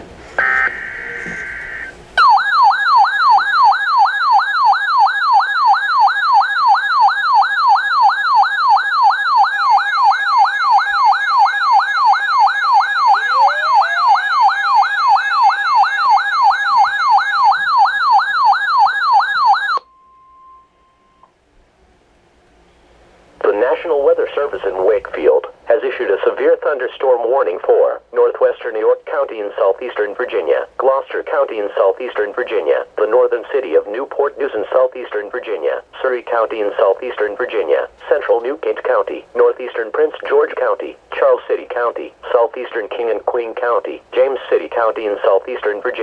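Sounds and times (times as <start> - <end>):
two-pitch data tones: 0.4 - 3.4
warbling siren-like alarm: 0.4 - 21.3
faint steady tone: 19.8 - 21.4.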